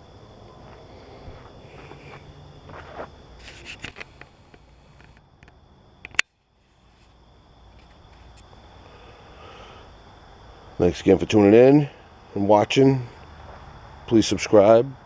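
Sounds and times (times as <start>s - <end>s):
light clicks and scrapes: 1.8s - 5.6s
sharp click: 5.0s - 6.3s.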